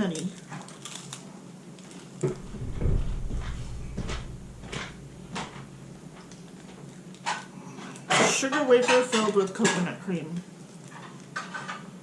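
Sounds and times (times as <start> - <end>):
handling knocks and clicks: 2.3 - 6.4
low rumble: 2.3 - 6.4.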